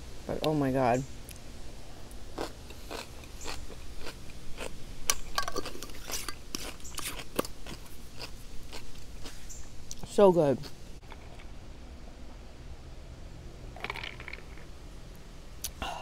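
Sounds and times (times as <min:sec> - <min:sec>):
person chewing crisp food: 0:02.3 - 0:10.0.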